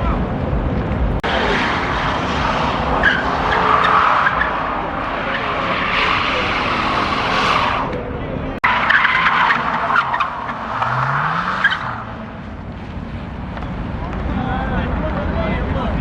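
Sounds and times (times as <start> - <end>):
tyres squealing and skidding: 1.2 - 12.6.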